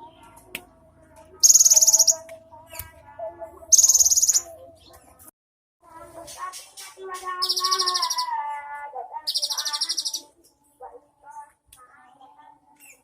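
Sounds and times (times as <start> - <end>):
bird high rapid trilling: 1.4 - 2.2, 3.7 - 4.5
soft bird calls: 3.7 - 5.2.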